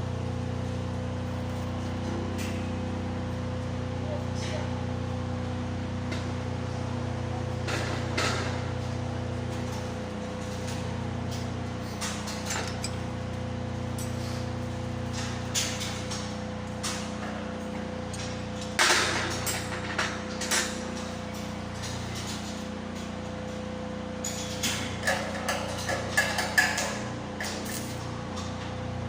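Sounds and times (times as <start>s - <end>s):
welding machine hum: 0.0s - 29.0s
metal clinks and knocks: 10.4s - 13.2s.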